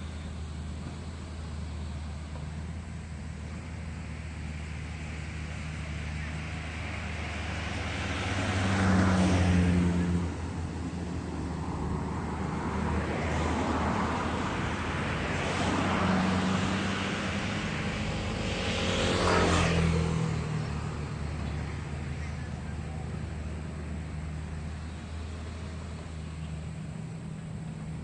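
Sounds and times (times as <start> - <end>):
excavator diesel engine: 0.0 - 28.0.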